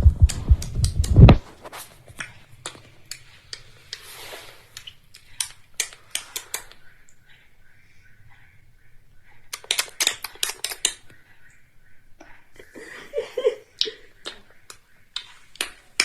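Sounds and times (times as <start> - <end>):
heavy thumps: 0.0 - 1.8
small hard objects clicking: 4.7 - 7.2, 9.5 - 11.2.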